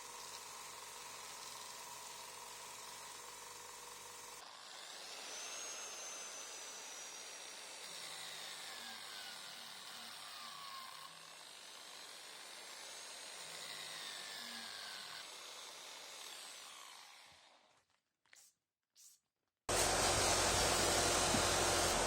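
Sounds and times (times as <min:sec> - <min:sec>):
electric power tool whining: 0:19.7 - 0:22.0.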